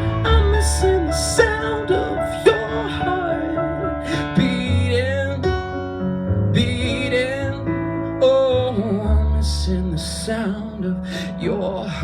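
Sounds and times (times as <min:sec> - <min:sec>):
acoustic guitar playing: 0:00.0 - 0:05.1
keyboard playing: 0:00.0 - 0:08.0.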